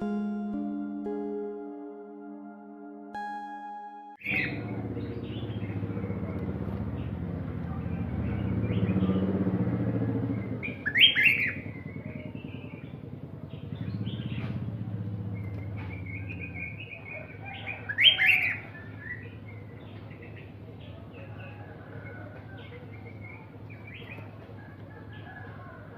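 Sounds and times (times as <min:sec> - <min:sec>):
soft bird twittering: 0:04.2 - 0:07.2, 0:10.3 - 0:21.3.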